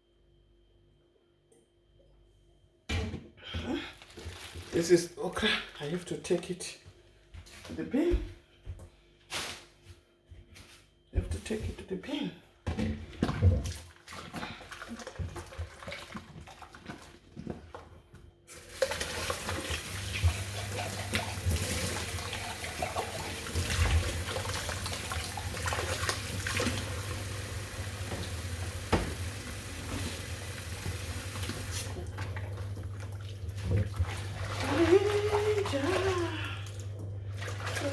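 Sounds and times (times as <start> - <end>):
tap water running: 18.5 - 37.9.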